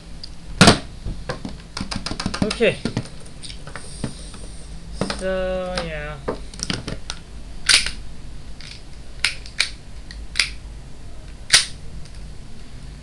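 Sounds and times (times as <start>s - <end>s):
pistol clicking: 7.6s - 8.0s, 8.6s - 10.6s, 11.5s - 11.8s.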